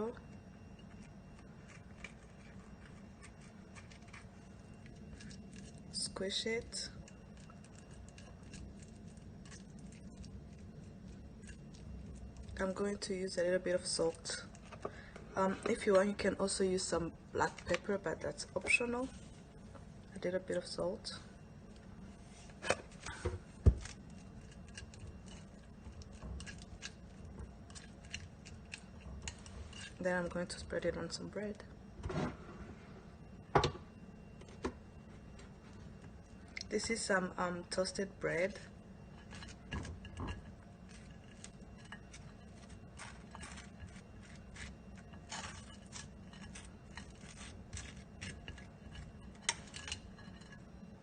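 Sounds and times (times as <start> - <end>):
low steady hum: 0.0 - 51.0
utensil scraping toast: 39.1 - 50.7.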